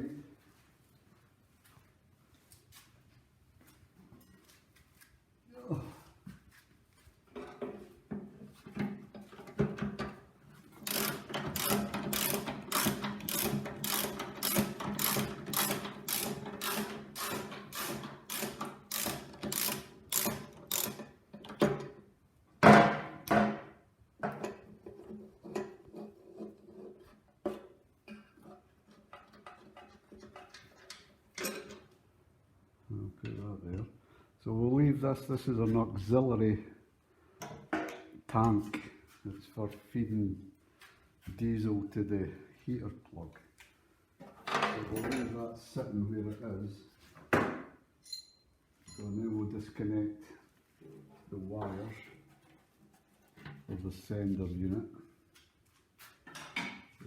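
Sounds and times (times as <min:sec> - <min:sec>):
ratchet spanner clicking: 0:10.8 - 0:21.0.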